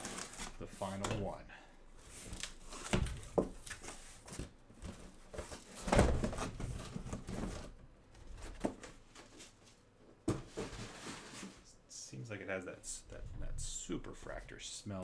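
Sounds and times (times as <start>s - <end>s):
cardboard rustling and scraping: 0.0s - 1.3s, 2.0s - 11.7s.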